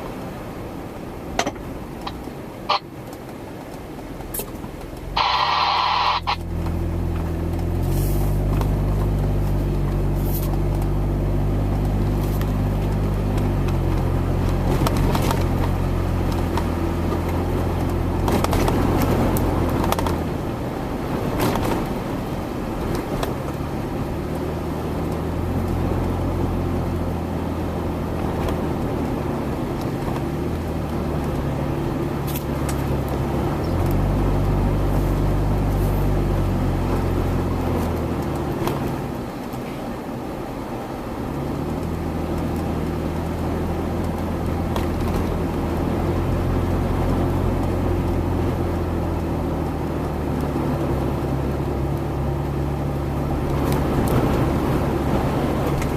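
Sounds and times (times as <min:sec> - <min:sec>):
vehicle engine running: 0:00.0 - 0:55.9
rushing noise: 0:05.1 - 0:06.9.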